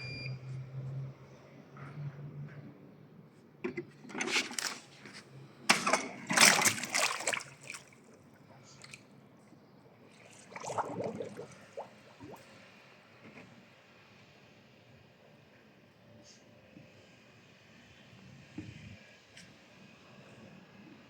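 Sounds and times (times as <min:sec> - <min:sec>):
pool water splashing: 0:06.0 - 0:09.1, 0:09.9 - 0:12.7.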